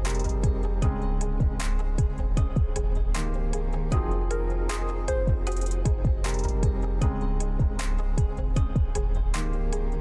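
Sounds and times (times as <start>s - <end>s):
deep kick drums: 0.0s - 3.3s, 3.9s - 4.4s, 5.1s - 9.4s.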